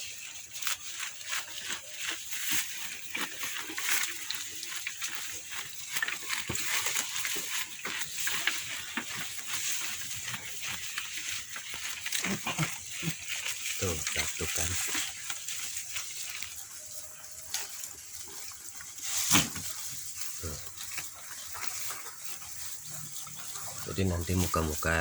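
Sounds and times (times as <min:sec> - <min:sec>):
goats chewing grass: 0:00.0 - 0:25.0
goat coughing: 0:12.2 - 0:13.3.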